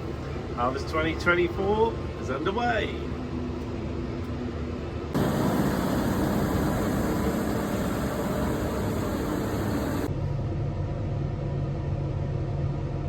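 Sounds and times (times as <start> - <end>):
machinery engine droning: 3.0 - 10.4
loud hissy machine noise: 5.2 - 10.1.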